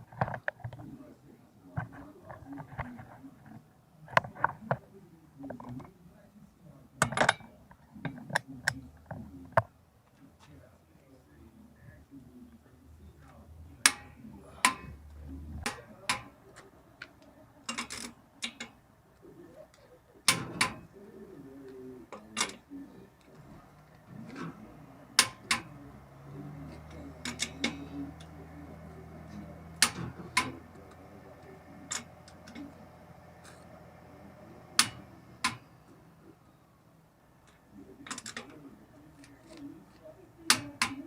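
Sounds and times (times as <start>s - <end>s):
low steady hum: 0.0s - 41.0s
hard objects clicking and knocking: 7.0s - 9.7s, 13.9s - 18.8s, 20.2s - 21.0s, 29.1s - 35.8s.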